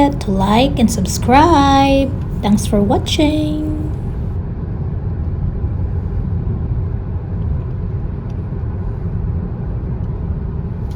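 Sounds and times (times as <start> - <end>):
car road rumble: 0.0 - 4.3.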